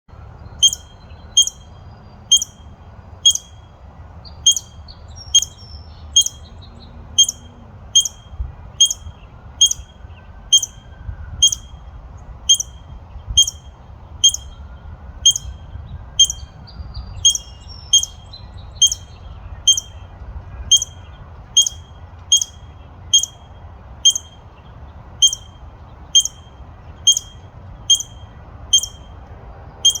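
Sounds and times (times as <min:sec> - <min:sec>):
squirrel barking: 0:00.6 - 0:03.6, 0:04.4 - 0:06.5, 0:07.1 - 0:09.9, 0:10.5 - 0:10.8, 0:11.4 - 0:11.8, 0:12.4 - 0:14.6, 0:15.2 - 0:16.6, 0:17.2 - 0:20.0, 0:20.6 - 0:24.6, 0:25.2 - 0:29.1, 0:29.8 - 0:30.0.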